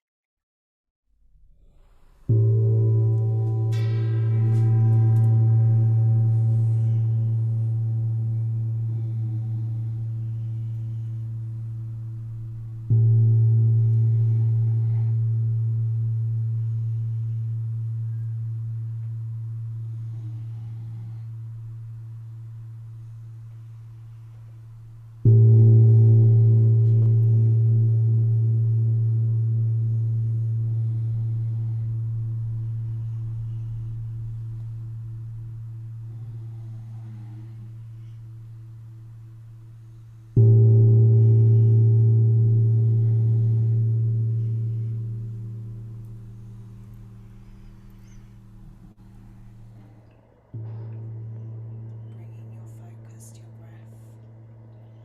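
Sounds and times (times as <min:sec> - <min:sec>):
metal gong ringing: 0:02.3 - 0:11.1, 0:39.9 - 0:55.0.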